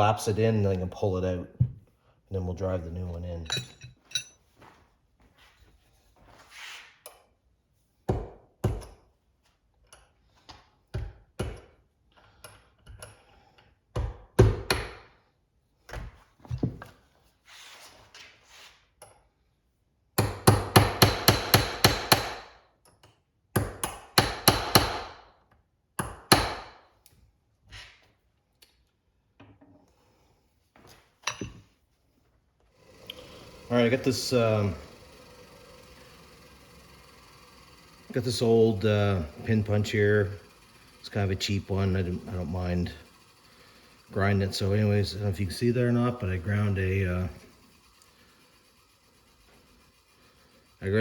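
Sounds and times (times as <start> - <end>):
hammer strikes: 20.2 - 22.6, 23.6 - 25.2, 26.0 - 26.8.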